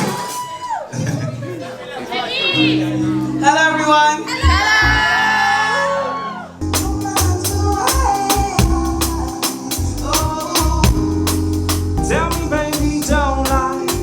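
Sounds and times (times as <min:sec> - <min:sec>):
drums and bass beat: 0:06.6 - 0:14.0.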